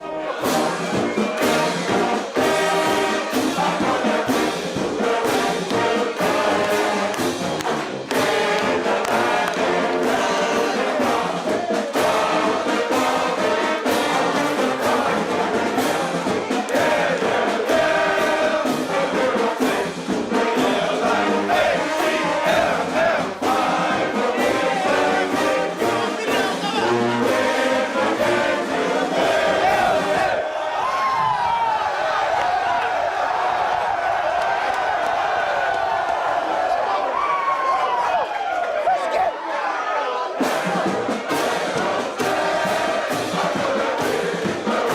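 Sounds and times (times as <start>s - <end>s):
brass band playing: 0.0s - 30.7s, 40.2s - 44.9s
many voices singing: 0.0s - 30.9s, 39.5s - 44.9s
steady drum beat: 0.4s - 30.4s, 40.4s - 44.9s.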